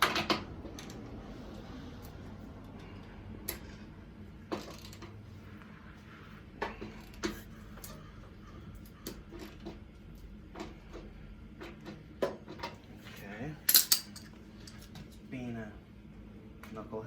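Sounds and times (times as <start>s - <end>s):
low steady hum: 0.0s - 17.0s
metal tools clinking and knocking: 13.6s - 15.2s.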